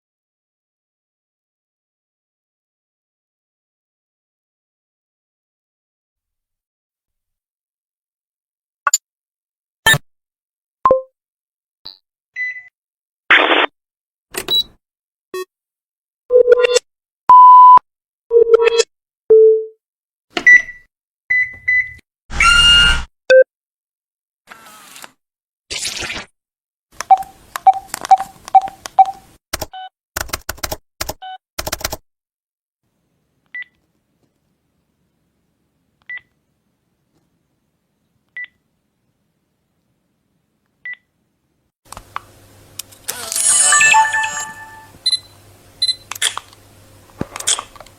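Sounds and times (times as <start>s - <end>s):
electronic button blips and beeps: 10.9s - 11.1s, 16.3s - 19.7s, 43.5s - 46.0s
harsh buzzy beep: 43.6s - 46.0s.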